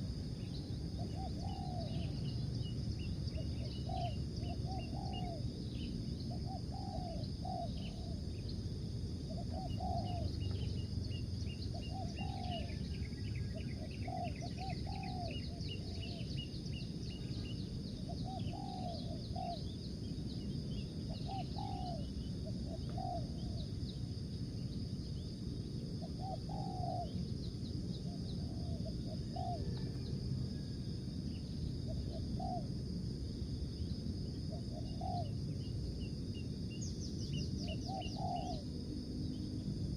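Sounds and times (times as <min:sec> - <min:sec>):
dove cooing: 0:00.9 - 0:02.4, 0:03.3 - 0:08.2, 0:09.3 - 0:10.9, 0:11.7 - 0:12.8, 0:13.4 - 0:16.2, 0:18.0 - 0:19.7, 0:21.1 - 0:23.7, 0:26.0 - 0:27.2, 0:28.0 - 0:30.7, 0:31.9 - 0:32.7, 0:34.5 - 0:35.3, 0:37.6 - 0:38.6.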